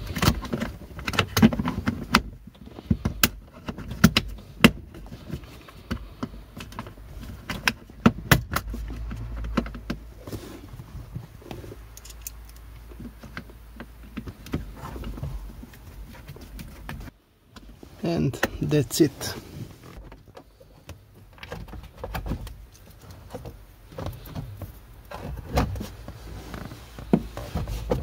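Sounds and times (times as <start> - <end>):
plastic parts clicking: 11.9 - 12.7.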